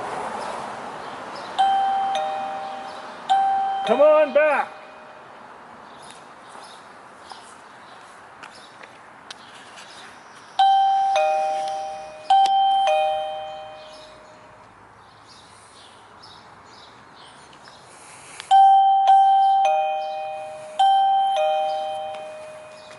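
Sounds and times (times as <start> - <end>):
two-tone doorbell chime: 1.6 - 5.2, 10.6 - 14.6, 18.5 - 22.9.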